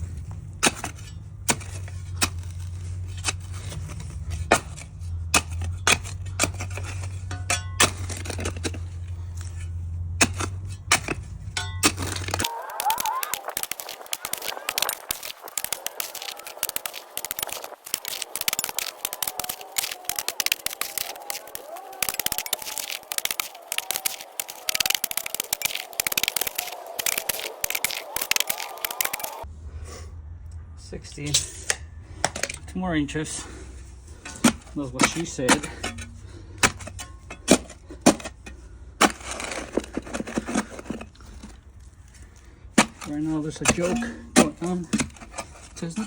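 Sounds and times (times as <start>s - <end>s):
shovel scraping dry soil: 0.0s - 29.4s, 39.0s - 46.0s.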